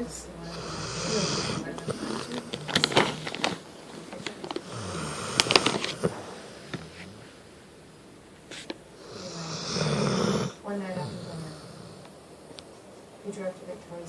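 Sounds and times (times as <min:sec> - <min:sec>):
cow snoring: 0:00.0 - 0:03.4, 0:04.6 - 0:07.4, 0:09.0 - 0:12.1
crackling clicks: 0:01.8 - 0:07.0.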